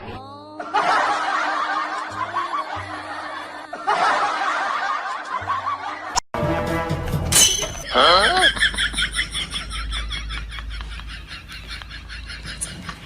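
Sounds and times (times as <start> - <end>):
background music: 0.0 - 9.1
laughter: 0.6 - 6.2, 7.9 - 13.0.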